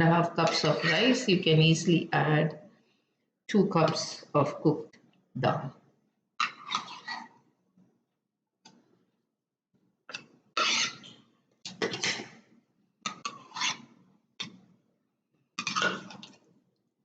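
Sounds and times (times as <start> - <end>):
utensil scraping mashed lentils: 10.6 - 11.0, 13.1 - 13.8.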